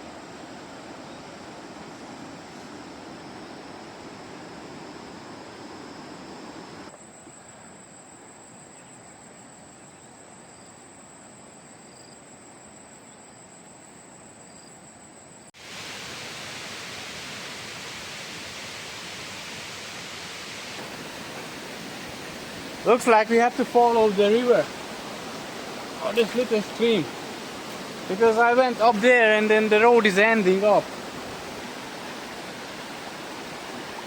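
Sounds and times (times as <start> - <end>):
stream rushing over rocks: 0.0 - 6.9, 15.6 - 34.0
high insect drone: 0.0 - 34.0.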